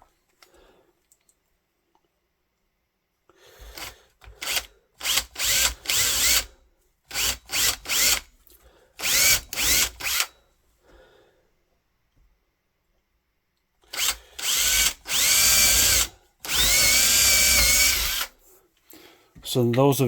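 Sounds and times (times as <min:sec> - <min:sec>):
electric drill boring hardboard: 0:03.6 - 0:06.5, 0:07.1 - 0:08.3, 0:09.0 - 0:10.3, 0:13.9 - 0:18.4.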